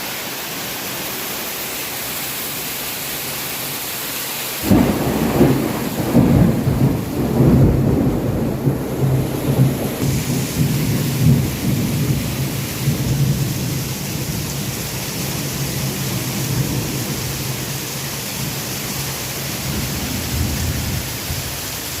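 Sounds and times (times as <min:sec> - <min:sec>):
heavy rain: 0:00.0 - 0:22.0
low thunder rumble: 0:04.6 - 0:14.8, 0:19.6 - 0:21.8.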